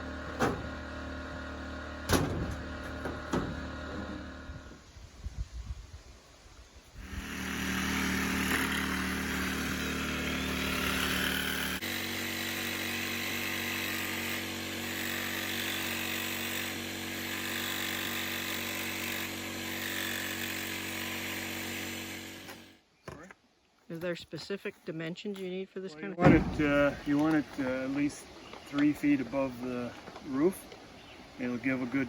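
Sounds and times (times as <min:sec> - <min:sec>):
electric jigsaw cutting: 0:07.0 - 0:22.7.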